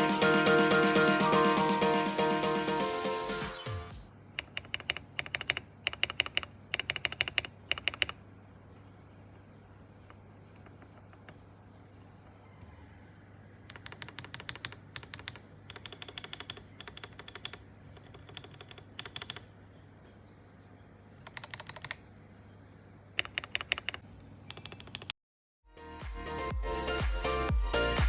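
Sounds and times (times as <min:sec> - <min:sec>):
mechanical keyboard typing: 0:04.4 - 0:08.2, 0:13.6 - 0:19.5, 0:21.2 - 0:22.0, 0:23.2 - 0:25.2
faint low hum: 0:07.4 - 0:25.0
low steady hum: 0:08.0 - 0:13.7.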